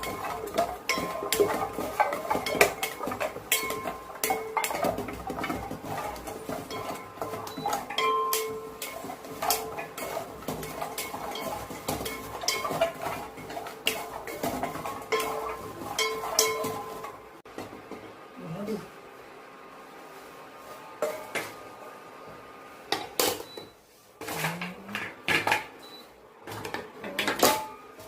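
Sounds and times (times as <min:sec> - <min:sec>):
metal utensil scraping metal pan: 0:00.0 - 0:17.3.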